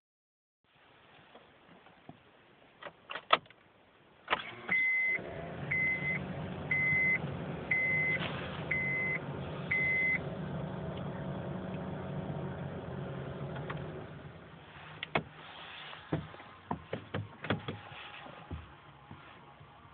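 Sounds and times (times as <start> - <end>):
car engine starting and idling: 4.3 - 19.1.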